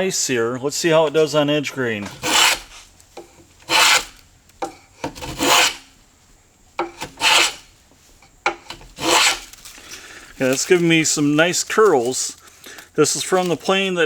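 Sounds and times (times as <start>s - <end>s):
hand plane shaving wood: 1.9s - 5.9s, 6.8s - 7.8s, 8.5s - 13.9s
plane tapping wood: 2.0s - 5.9s, 6.8s - 7.7s, 8.4s - 9.5s.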